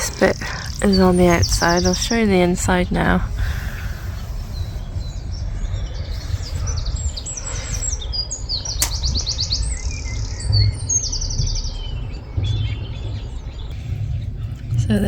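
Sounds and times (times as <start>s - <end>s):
songbirds singing: 0.0s - 15.0s
steady low rumble: 0.0s - 15.0s
sharp click: 8.6s - 9.3s.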